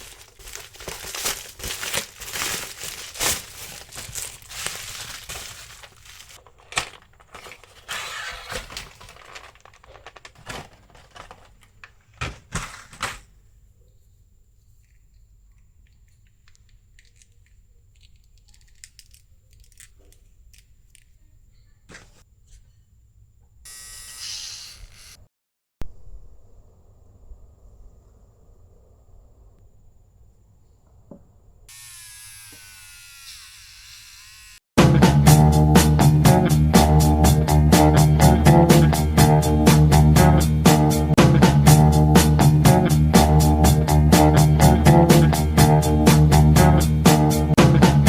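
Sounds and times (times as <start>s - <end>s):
small parts rustling: 0.0s - 13.5s, 15.8s - 21.3s.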